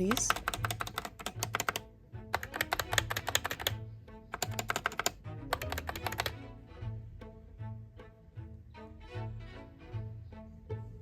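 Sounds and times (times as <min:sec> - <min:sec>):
fast typing on a keyboard: 0:00.0 - 0:03.8, 0:04.4 - 0:06.4.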